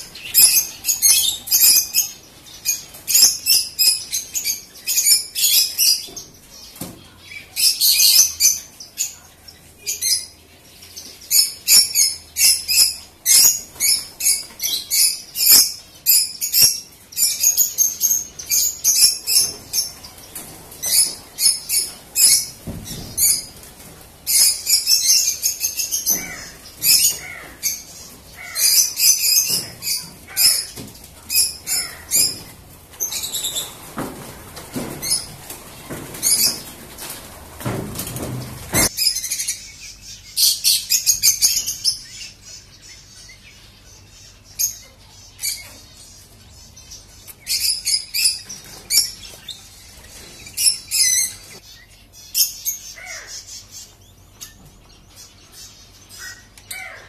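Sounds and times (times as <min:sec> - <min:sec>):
small birds chirping: 0:00.0 - 0:57.0
low sweeping bird calls: 0:24.3 - 0:37.1.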